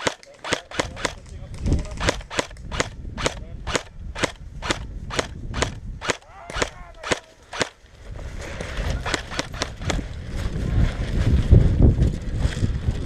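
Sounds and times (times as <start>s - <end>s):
airsoft gun shots: 0.0s - 1.2s, 1.9s - 7.8s, 9.0s - 10.0s.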